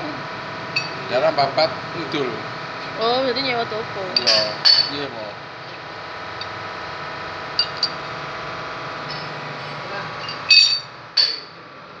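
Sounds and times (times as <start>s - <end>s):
machine motor humming: 0.0s - 11.5s
loud metallic clinks: 0.7s - 1.2s, 4.2s - 5.1s, 6.4s - 6.6s, 7.5s - 8.3s, 9.0s - 11.5s.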